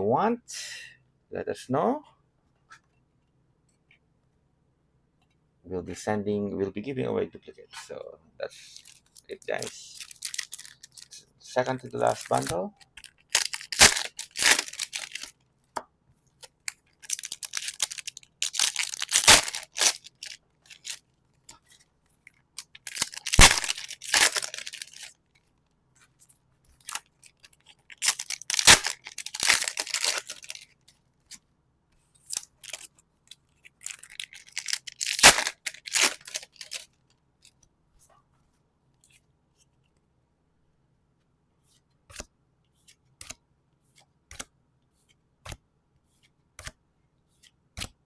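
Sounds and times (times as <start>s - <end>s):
foil packs tearing and crinkling: 8.7s - 11.2s, 12.0s - 15.3s, 17.0s - 21.0s, 22.6s - 25.1s, 27.9s - 30.6s, 32.3s - 32.9s, 33.8s - 36.9s.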